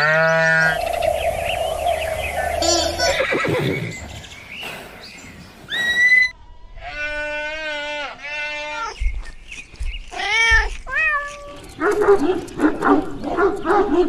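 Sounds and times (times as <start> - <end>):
horse whinnying: 3.0 - 4.1
cat meowing: 10.2 - 11.6.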